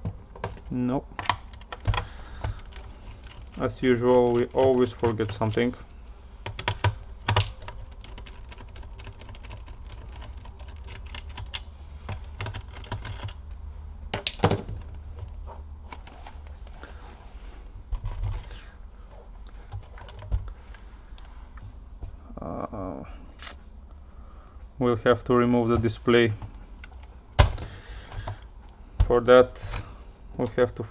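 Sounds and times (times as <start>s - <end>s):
clicks and taps on plastic casing: 0.0s - 3.4s, 6.4s - 8.8s.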